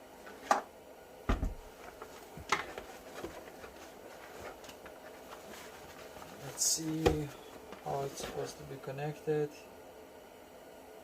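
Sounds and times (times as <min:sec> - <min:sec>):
heavy thump: 0:01.3 - 0:01.7.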